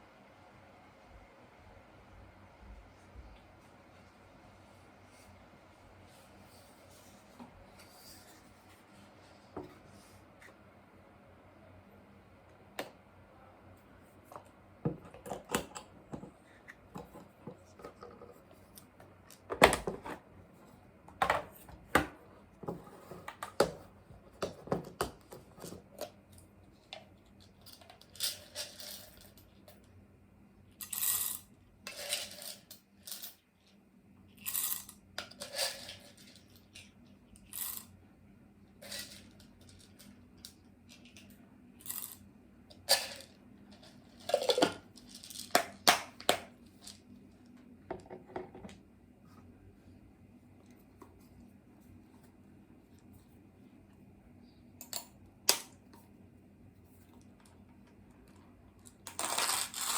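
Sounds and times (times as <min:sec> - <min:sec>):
faint steady hum: 0:00.0 - 0:59.9
small hard objects clinking: 0:59.0 - 0:59.9.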